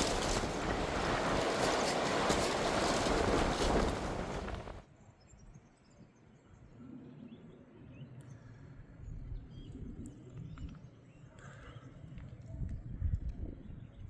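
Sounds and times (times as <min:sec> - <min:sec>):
faint low rumble: 0:00.0 - 0:04.8
wind rushing over microphone: 0:00.0 - 0:04.8.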